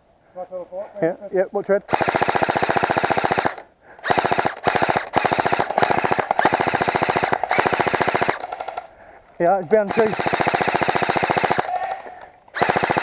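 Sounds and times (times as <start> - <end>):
airsoft rifle automatic fire: 1.9 - 8.9, 9.8 - 12.0, 12.6 - 13.0.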